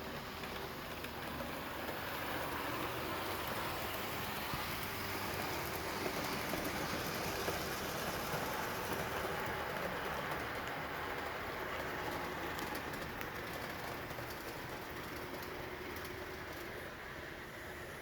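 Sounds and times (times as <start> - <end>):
train rushing and rumbling: 0.0 - 18.0.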